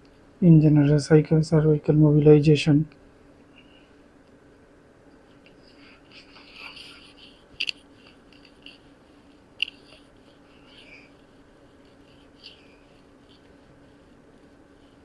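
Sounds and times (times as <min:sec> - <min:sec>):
rustling of hands and fabric: 0:04.2 - 0:15.0.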